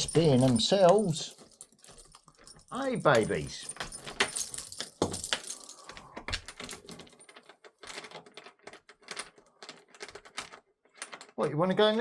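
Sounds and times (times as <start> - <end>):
collar tags jingling: 0.0 - 7.4.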